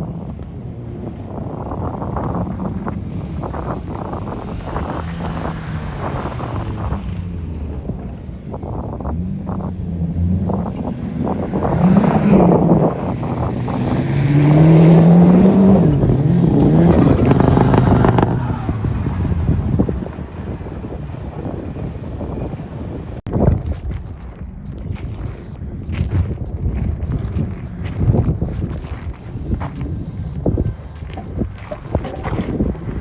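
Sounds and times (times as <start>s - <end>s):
wind on microphone: 0.0s - 33.0s
car engine revving hard: 9.0s - 22.9s.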